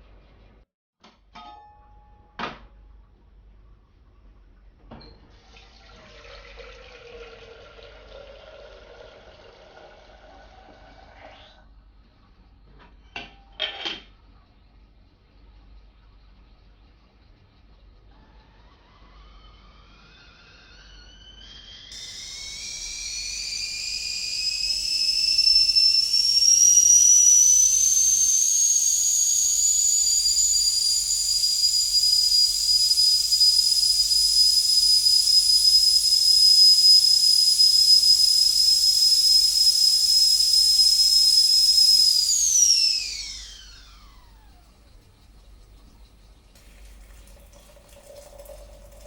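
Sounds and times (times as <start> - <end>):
stovetop kettle whistling: 18.1 - 49.0
steam hiss: 20.8 - 44.1.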